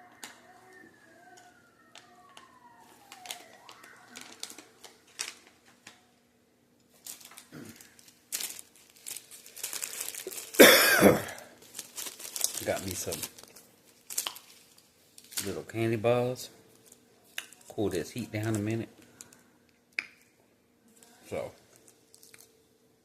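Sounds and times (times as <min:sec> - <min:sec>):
plastic packaging crinkling: 0:01.4 - 0:06.2, 0:06.9 - 0:15.8, 0:16.7 - 0:19.5, 0:21.0 - 0:22.6.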